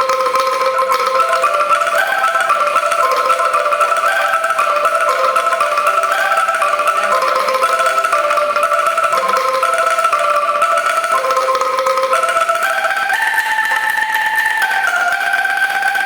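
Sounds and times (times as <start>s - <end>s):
bamboo angklung ensemble melody: 0.0s - 16.0s.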